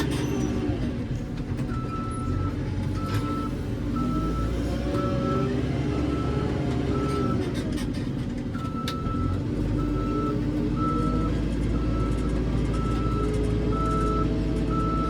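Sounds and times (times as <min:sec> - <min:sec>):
diesel engine under load: 0:00.0 - 0:15.0
reversing alarm beeping: 0:08.7 - 0:15.0.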